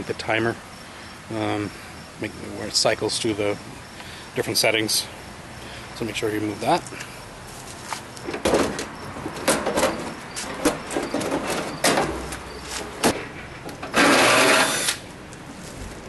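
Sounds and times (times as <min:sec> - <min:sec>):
small power tool whirring: 0:13.9 - 0:15.0.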